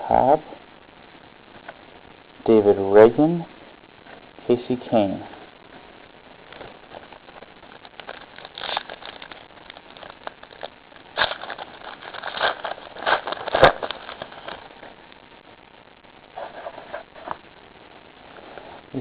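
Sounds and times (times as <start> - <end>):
wrapper crinkling and rustling: 6.4 - 14.9.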